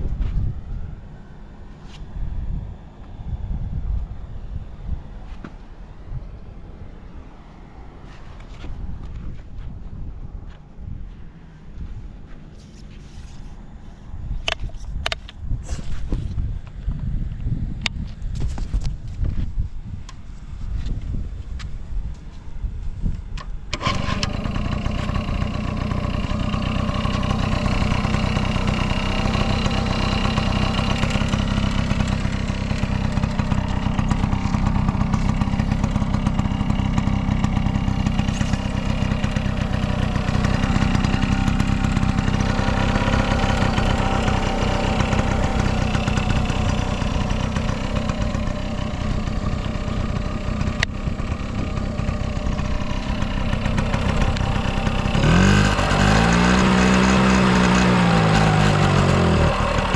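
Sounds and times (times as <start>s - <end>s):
moped two-stroke engine running: 23.6s - 59.9s.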